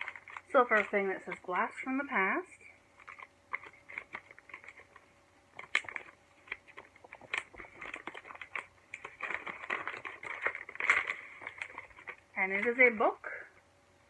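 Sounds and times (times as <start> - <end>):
packaging crinkling: 0.0 - 1.8, 2.9 - 12.8.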